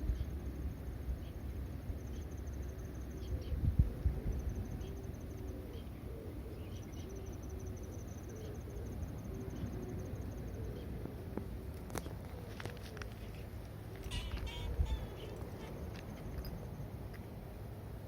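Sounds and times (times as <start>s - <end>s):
insect trilling: 14.0s - 15.9s.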